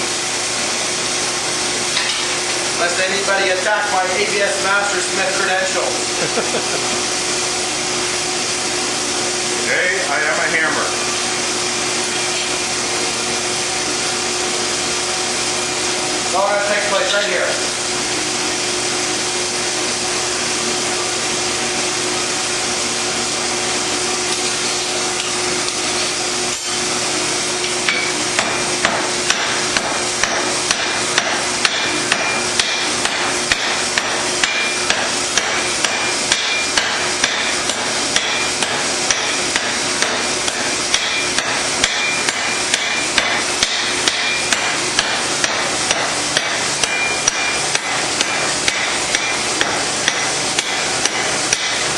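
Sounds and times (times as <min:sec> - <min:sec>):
hammer ringing on anvil: 0:27.9 - 0:51.8.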